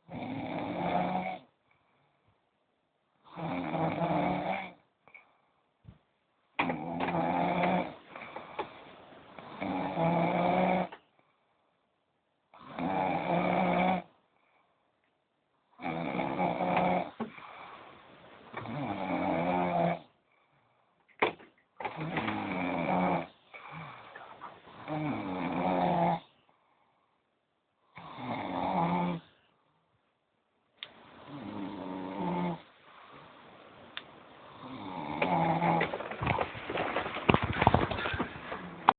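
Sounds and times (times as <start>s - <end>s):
man snoring loudly: 0.1s - 1.4s, 3.3s - 4.8s, 6.6s - 8.0s, 9.4s - 10.9s, 12.6s - 14.1s, 15.8s - 17.2s, 18.6s - 20.0s, 22.0s - 24.0s, 24.8s - 26.2s, 28.0s - 29.2s, 31.3s - 32.6s, 34.6s - 35.8s.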